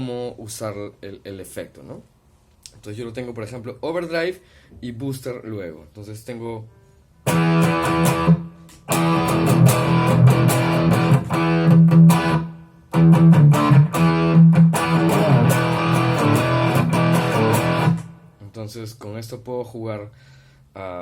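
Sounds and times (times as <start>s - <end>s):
overdriven electric guitar strumming: 7.2s - 18.4s.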